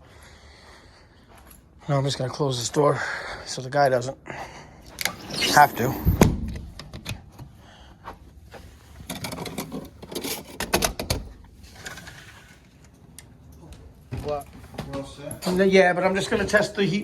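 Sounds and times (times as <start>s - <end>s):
door clicking and rattling: 9.1s - 11.3s.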